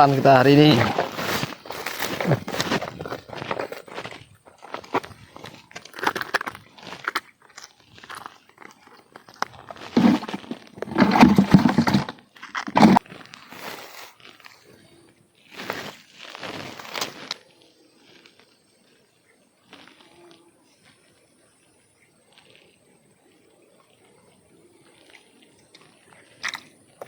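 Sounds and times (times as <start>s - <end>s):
rustling and crunching: 0.0s - 21.2s.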